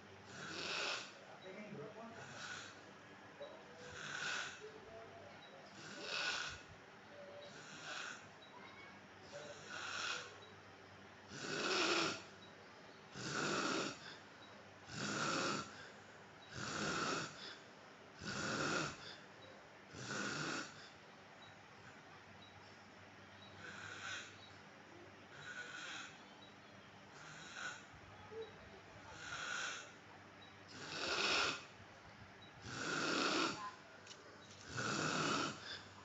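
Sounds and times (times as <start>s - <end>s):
man snoring: 0.3s - 1.2s, 2.2s - 2.8s, 3.8s - 4.7s, 5.8s - 6.7s, 7.5s - 8.2s, 9.4s - 10.4s, 11.3s - 12.3s, 13.1s - 14.2s, 14.8s - 17.6s, 18.2s - 19.2s, 19.9s - 20.8s, 23.6s - 24.4s, 25.3s - 26.2s, 27.1s - 27.9s, 29.1s - 30.0s, 30.7s - 31.7s, 32.6s - 33.7s, 34.6s - 35.8s.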